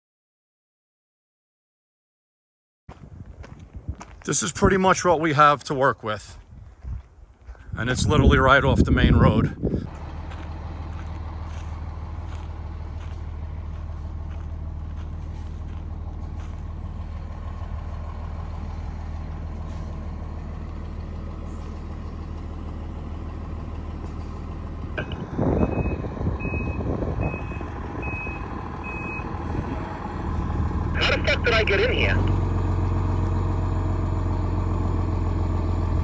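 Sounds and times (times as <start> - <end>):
engine idling low hum: 6.3 - 36.0
reversing beeper: 25.0 - 29.8.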